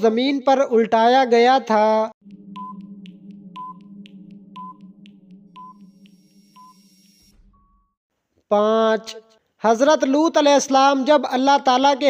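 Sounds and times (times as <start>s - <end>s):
short timer pings: 2.2s - 8.0s
steady low hum: 2.2s - 8.0s
soft ticks: 2.3s - 6.4s.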